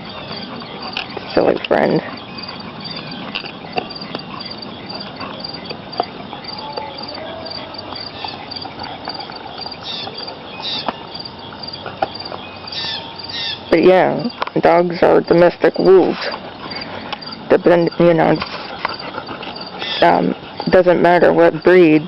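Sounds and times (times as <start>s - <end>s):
insects chirping: 0.0s - 22.0s.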